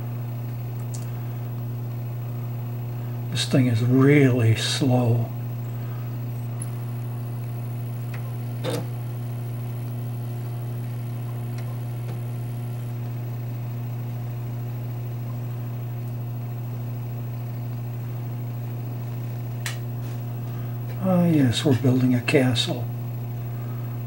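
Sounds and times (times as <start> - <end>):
low electrical hum of computer: 0.0 - 24.0
faint clicks: 0.5 - 1.2.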